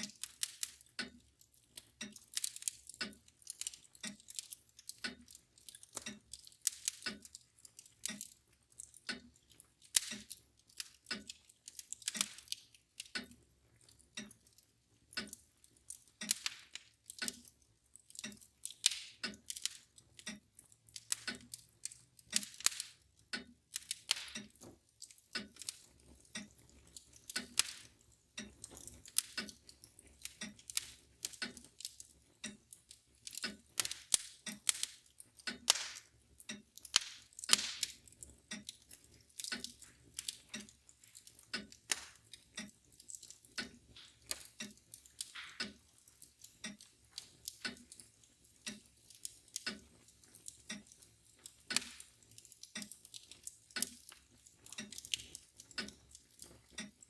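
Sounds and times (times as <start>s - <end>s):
clock ticking: 0.0s - 57.0s
wood fire crackling: 0.0s - 57.0s.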